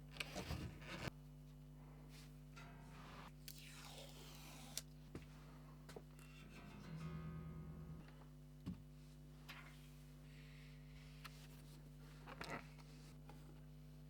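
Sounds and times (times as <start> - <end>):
low hum: 6.1 - 8.2
string scrape: 6.2 - 8.1
bass guitar plucks: 6.5 - 8.1.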